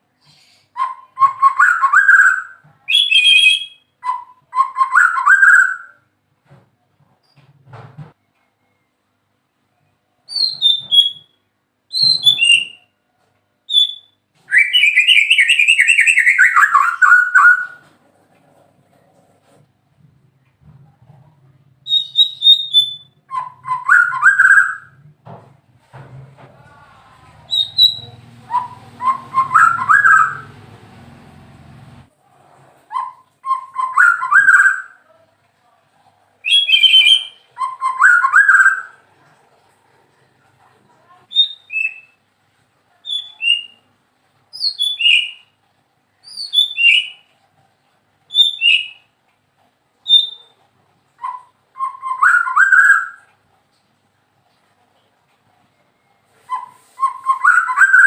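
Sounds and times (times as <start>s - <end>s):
songbird whistling song: 0.2s - 6.0s, 10.3s - 13.0s, 13.7s - 17.8s, 21.8s - 25.0s, 27.3s - 32.0s, 32.9s - 35.0s, 36.4s - 39.0s, 41.3s - 42.2s, 43.1s - 43.9s, 44.5s - 45.6s, 46.2s - 47.3s, 48.3s - 49.2s, 50.0s - 50.6s, 51.2s - 53.3s, 56.0s - 58.0s.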